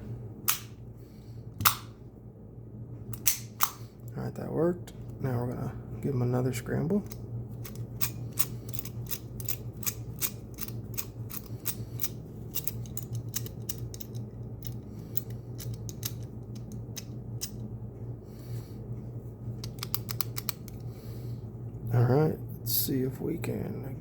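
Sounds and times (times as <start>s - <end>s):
steady low hum: 0.0s - 24.0s
padlock wheels clicking: 7.0s - 17.7s, 19.6s - 20.9s.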